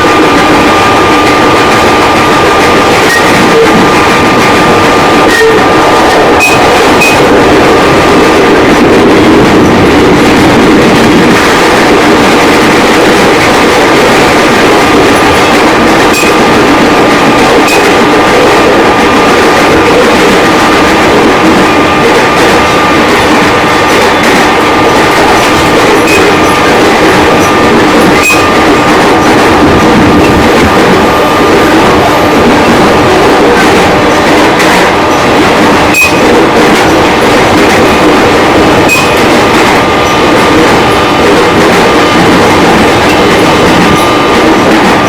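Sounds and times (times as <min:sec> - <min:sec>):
electric train rumble: 0:00.0 - 0:45.0
steady high whine: 0:00.0 - 0:45.0.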